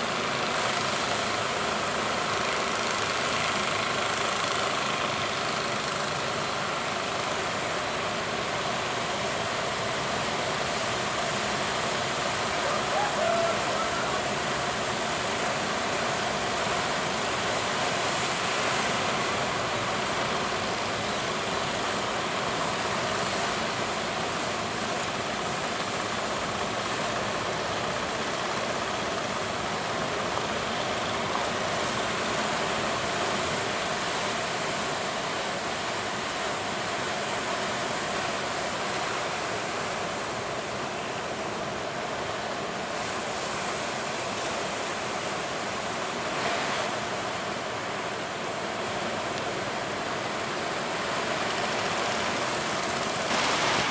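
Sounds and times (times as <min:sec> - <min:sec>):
ocean waves breaking: 0:50.2 - 0:53.9.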